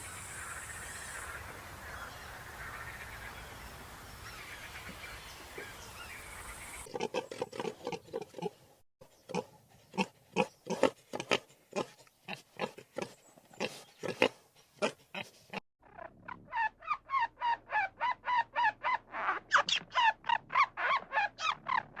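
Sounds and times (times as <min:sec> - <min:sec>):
pig grunting: 0:09.3 - 0:16.4.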